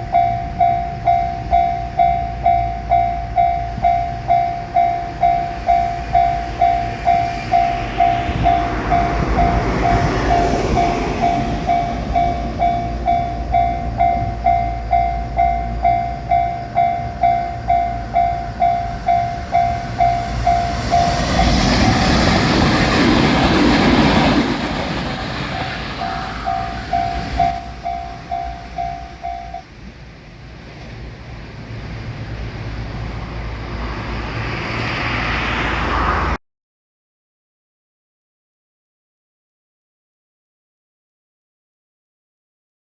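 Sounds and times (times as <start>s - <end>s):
level crossing bell clanging: 0.0s - 23.0s, 23.7s - 30.1s
electric train passing: 0.0s - 36.4s.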